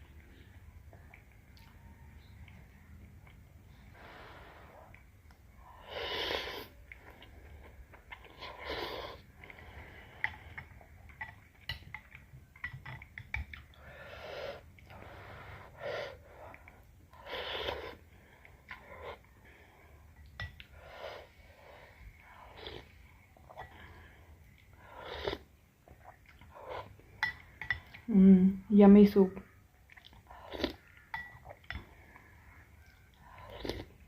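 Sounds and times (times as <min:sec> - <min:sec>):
slurping noodles: 0:05.8 - 0:07.4, 0:14.0 - 0:18.1, 0:24.8 - 0:25.5
chewing mouth sounds: 0:29.9 - 0:31.9.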